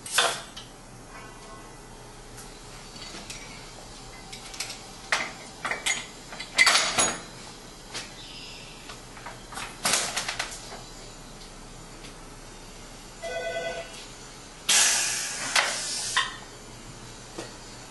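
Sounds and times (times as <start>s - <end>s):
metal clanking and rattling: 4.4s - 7.4s.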